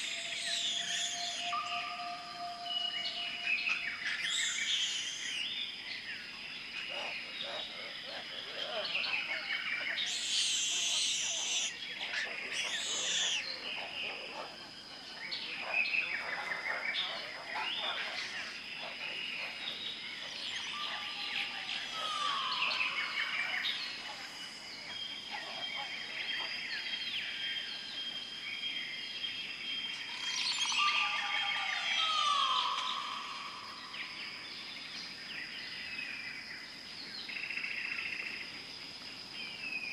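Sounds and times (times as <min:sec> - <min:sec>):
birds calling and chirping: 0:00.0 - 0:36.3
high insect drone: 0:00.0 - 0:39.9.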